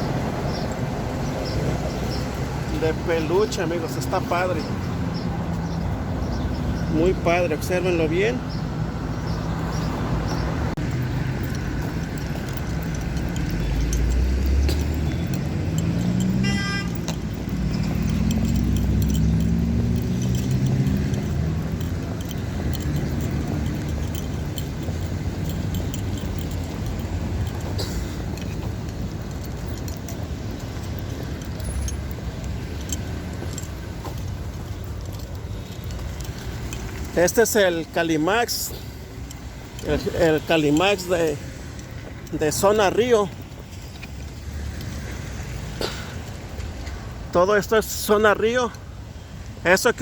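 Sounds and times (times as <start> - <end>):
vehicle engine accelerating: 10.0 - 37.1
short horn toot: 16.4 - 17.0.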